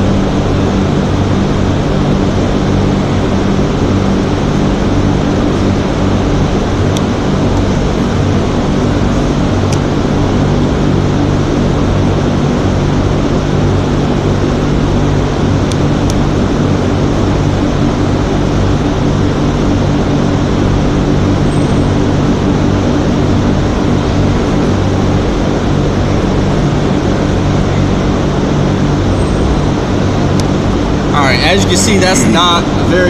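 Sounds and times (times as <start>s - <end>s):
heat gun fan humming: 29.6s - 33.0s.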